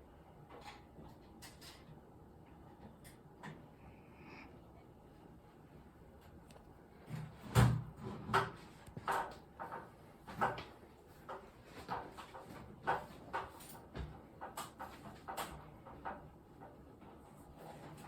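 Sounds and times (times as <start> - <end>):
objects knocking and clattering: 7.1 - 16.8.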